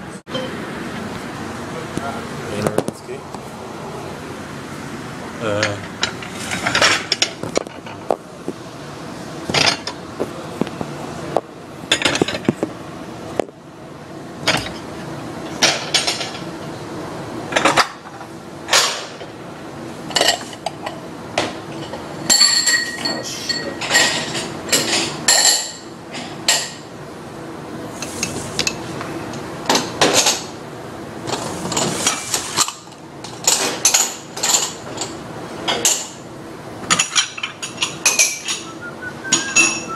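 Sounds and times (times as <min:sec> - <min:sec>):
dishes and cutlery clinking: 0:21.8 - 0:26.8, 0:36.9 - 0:39.9.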